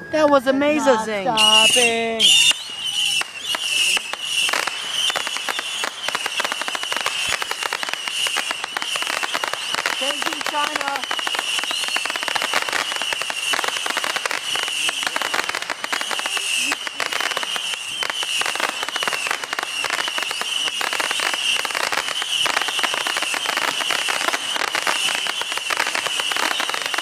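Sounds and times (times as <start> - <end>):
steady high-pitched tone: 0.0 - 2.2
fireworks crackling and popping: 0.3 - 27.0.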